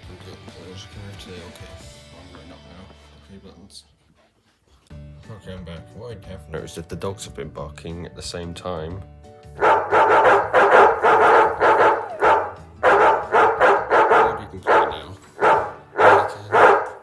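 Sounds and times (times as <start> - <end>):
dogs barking: 9.6 - 17.0.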